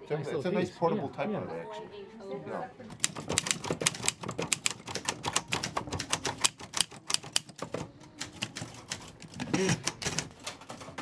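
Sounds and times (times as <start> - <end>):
manual typewriter keys clacking: 2.9 - 11.0.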